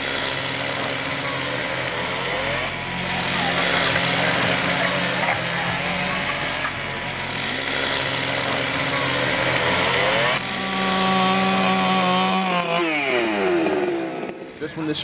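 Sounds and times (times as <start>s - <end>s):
chainsaw running at high revs: 0.0s - 15.0s.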